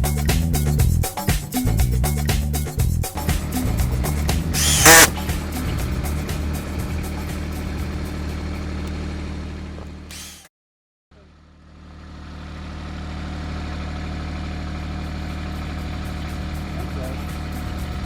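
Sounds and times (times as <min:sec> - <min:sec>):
engine humming steadily: 0:03.4 - 0:10.1, 0:11.2 - 0:18.0.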